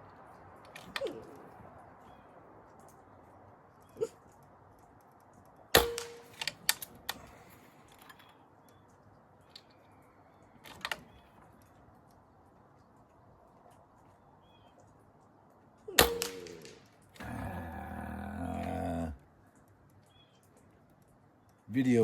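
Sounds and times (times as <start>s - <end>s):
sharp clicks: 0.0s - 22.0s
suppressed air rifle shot: 5.8s - 6.5s, 16.0s - 16.8s.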